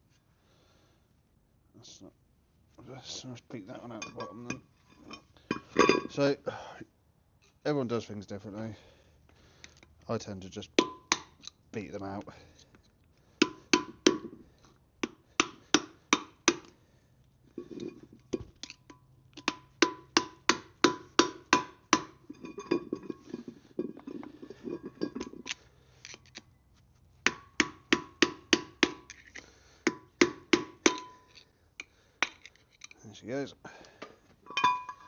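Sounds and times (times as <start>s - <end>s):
hammer striking metal: 13.4s - 14.3s, 19.4s - 22.2s, 27.3s - 29.1s, 29.9s - 31.3s.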